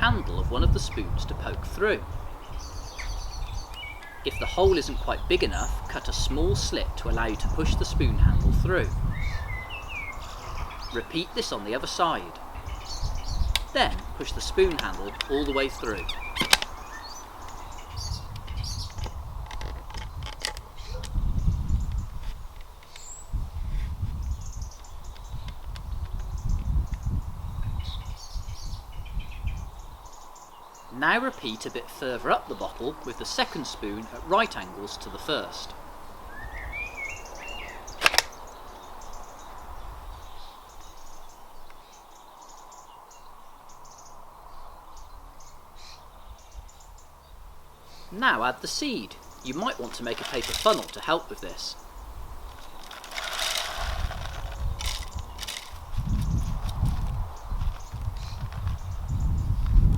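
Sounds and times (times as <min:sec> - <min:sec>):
faint outdoor background noise: 0:00.0 - 0:59.9
small birds chirping: 0:00.0 - 0:59.9
plastic bottle clicking and crackling: 0:16.4 - 0:16.7, 0:38.0 - 0:38.3, 0:49.8 - 0:51.0, 0:52.5 - 0:55.8
sliding bird call: 0:48.2 - 0:51.8, 0:52.6 - 0:55.8.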